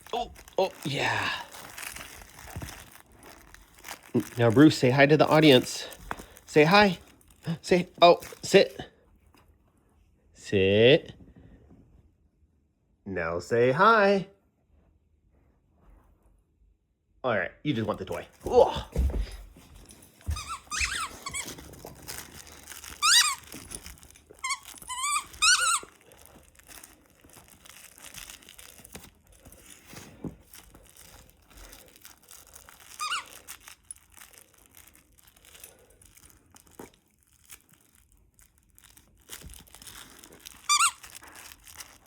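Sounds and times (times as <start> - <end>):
squeaky dog toy squeaking: 20.3 - 26.3, 32.8 - 33.8, 40.5 - 42.0.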